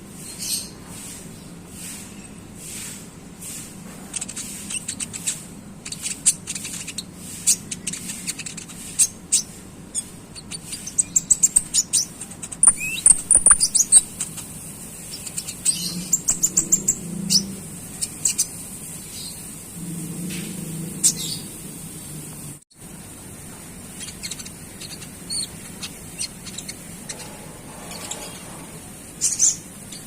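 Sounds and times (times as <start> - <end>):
songbird chirping high chips: 4.3 - 19.6, 24.0 - 28.5.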